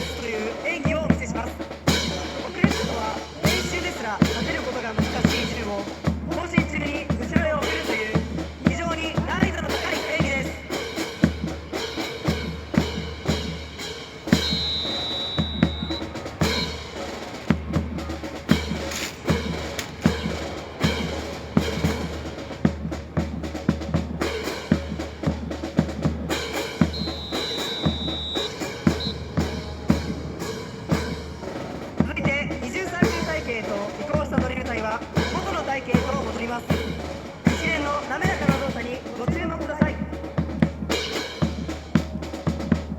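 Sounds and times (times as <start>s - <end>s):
music with bass drum beat: 0.0s - 42.9s
high held tone: 14.4s - 16.8s, 26.8s - 29.8s
snare cracks: 18.6s - 20.4s.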